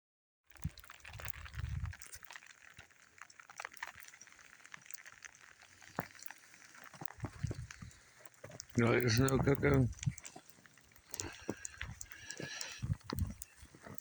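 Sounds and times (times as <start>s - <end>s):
faint crackling ticks: 0.5s - 14.0s
low muffled rumbles: 7.2s - 8.0s, 8.6s - 10.3s, 11.2s - 13.5s.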